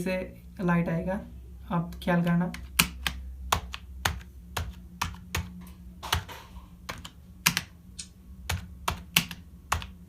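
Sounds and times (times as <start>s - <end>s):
keyboard keys clicking: 2.5s - 10.0s.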